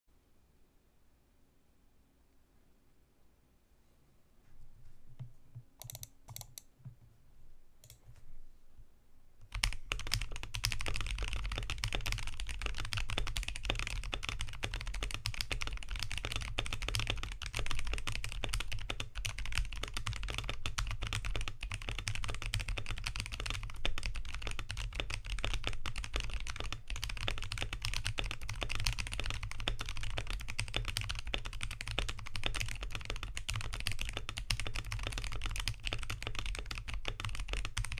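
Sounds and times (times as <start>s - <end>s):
mechanical keyboard typing: 5.8s - 6.7s, 9.5s - 37.9s.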